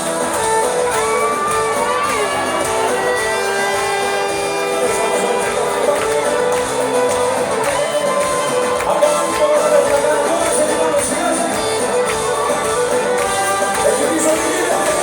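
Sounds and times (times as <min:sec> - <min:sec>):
crowd shouting and cheering: 0:00.0 - 0:15.0
loud live band music: 0:00.0 - 0:15.0.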